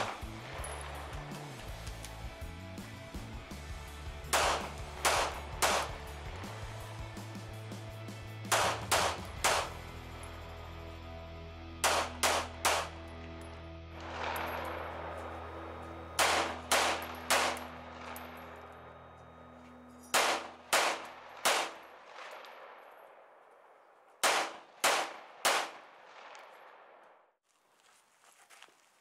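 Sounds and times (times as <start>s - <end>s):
gunshots: 0.0s - 2.0s, 4.2s - 6.6s, 8.4s - 9.9s, 11.8s - 13.3s, 13.9s - 19.0s, 20.1s - 23.4s, 24.2s - 27.2s
bullets clanging on steel targets: 4.3s - 6.1s, 8.5s - 10.6s, 11.8s - 23.2s.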